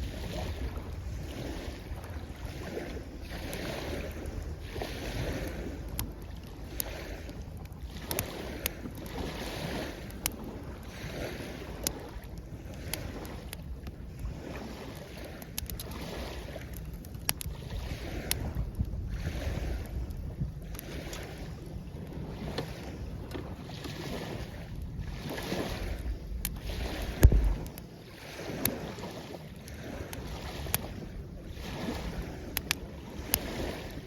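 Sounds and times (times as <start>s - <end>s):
small waves washing on shore: 0.0s - 34.0s
wind rumble on microphone: 0.0s - 34.0s
campfire popping and crackling: 0.1s - 31.0s, 31.8s - 34.0s.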